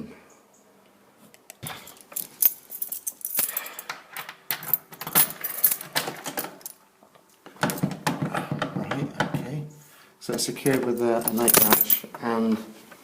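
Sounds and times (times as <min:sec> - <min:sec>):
metallic clicking and rattling of lock: 0:02.0 - 0:06.8, 0:10.7 - 0:12.1.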